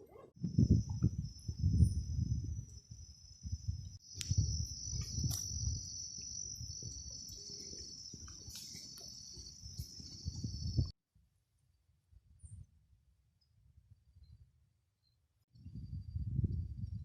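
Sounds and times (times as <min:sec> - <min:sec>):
insects trilling: 0:00.4 - 0:10.9.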